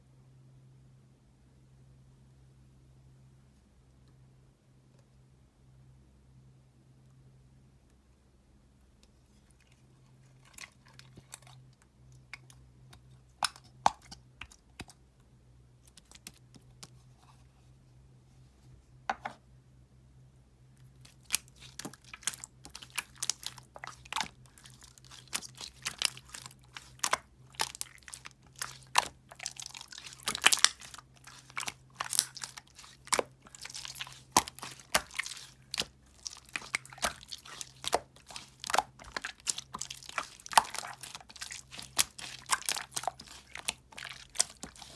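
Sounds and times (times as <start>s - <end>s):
faint steady hum: 0.0s - 44.9s
gel crackling and clicking: 20.9s - 44.9s.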